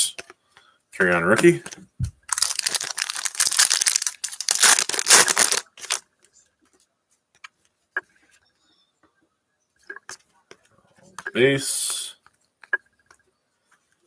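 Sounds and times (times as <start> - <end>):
foil wrapper tearing and crinkling: 2.3 - 6.0.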